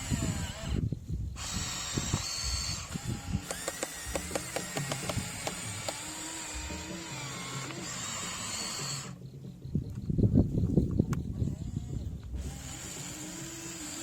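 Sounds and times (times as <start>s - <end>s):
small electric motors running: 0.0s - 9.2s, 11.4s - 14.0s
sharp irregular clicks: 3.4s - 6.2s.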